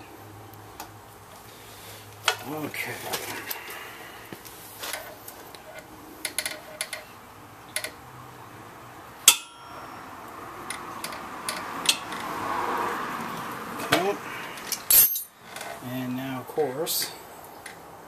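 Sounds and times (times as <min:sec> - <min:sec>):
metal tools clinking and clanking: 0:14.6 - 0:15.8.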